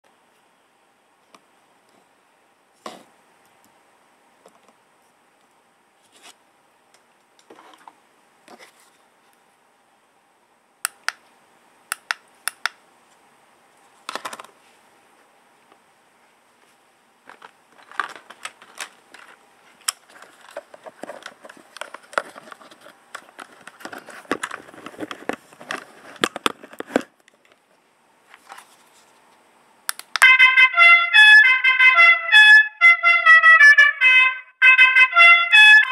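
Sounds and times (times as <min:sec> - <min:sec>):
clicking and rustling: 0:17.3 - 0:27.6
trumpet-like call over loudspeakers: 0:30.2 - 0:35.9.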